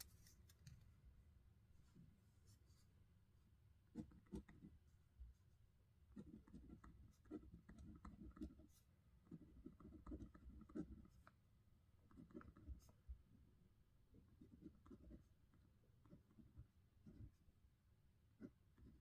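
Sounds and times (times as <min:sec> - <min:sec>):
pen scratching on paper: 0:06.2 - 0:11.2, 0:12.1 - 0:13.0, 0:14.2 - 0:17.4.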